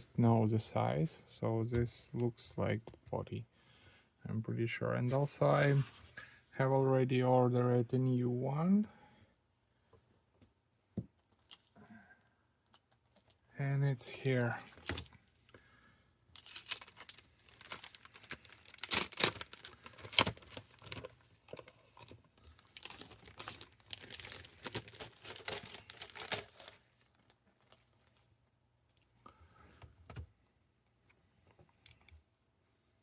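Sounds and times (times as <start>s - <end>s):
packaging crinkling and tearing: 16.4s - 28.1s.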